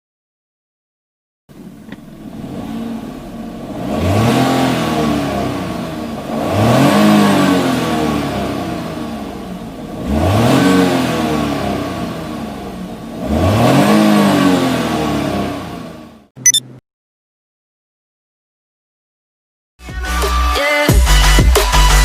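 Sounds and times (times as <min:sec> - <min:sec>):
motorcycle engine revving: 0:02.3 - 0:16.3.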